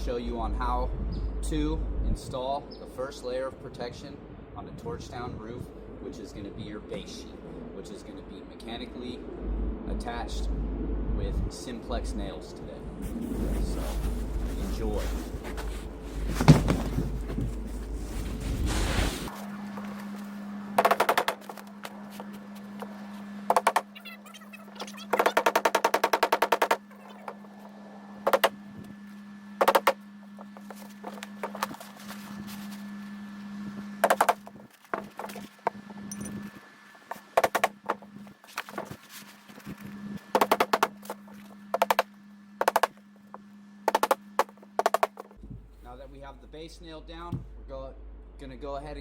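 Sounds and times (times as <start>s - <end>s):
steady low hum: 0.0s - 49.0s
nails being driven: 20.8s - 21.6s, 23.5s - 23.9s, 25.1s - 26.8s, 28.2s - 28.5s, 29.6s - 30.0s, 34.0s - 34.5s, 37.4s - 38.0s, 40.3s - 40.9s, 41.7s - 43.0s, 43.9s - 45.3s.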